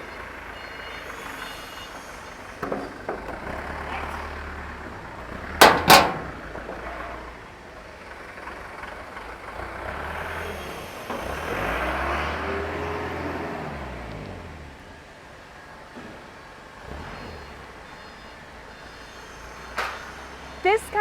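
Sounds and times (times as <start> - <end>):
low machinery rumble: 2.0 - 8.4
sharp knocks: 5.6 - 6.5.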